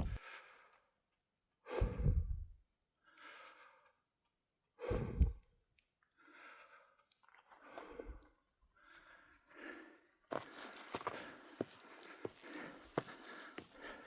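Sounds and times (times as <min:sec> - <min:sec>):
person breathing hard: 0:01.7 - 0:02.5, 0:04.8 - 0:05.4, 0:08.8 - 0:14.0.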